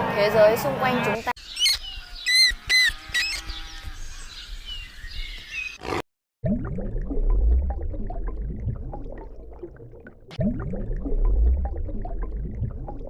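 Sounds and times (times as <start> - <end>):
bird chirps and whistles: 1.4 - 3.5.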